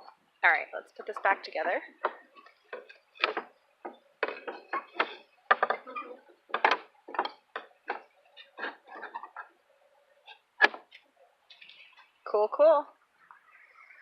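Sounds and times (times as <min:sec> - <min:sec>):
wooden pieces clattering: 0:02.0 - 0:09.5.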